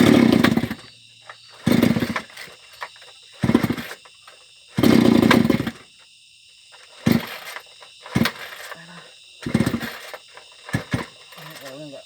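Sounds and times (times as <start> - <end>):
engine revving: 0.0 - 2.6, 3.4 - 4.0, 4.8 - 5.8, 7.0 - 11.8.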